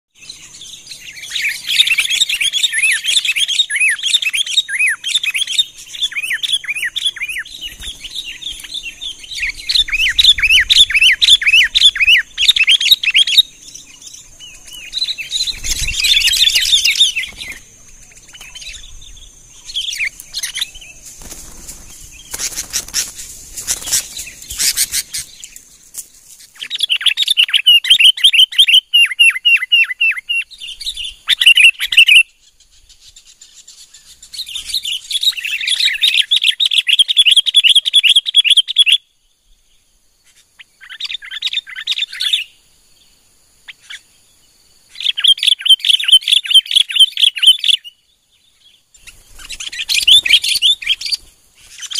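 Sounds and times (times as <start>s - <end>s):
birds chirping rapidly: 0.1s - 51.9s
wing flutters: 5.1s - 13.4s, 14.2s - 27.1s, 49.0s - 51.9s.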